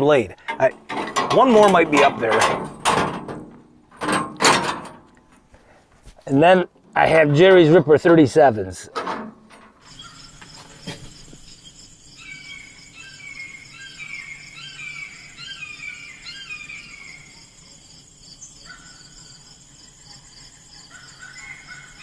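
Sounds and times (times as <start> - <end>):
insects trilling: 9.5 - 22.0.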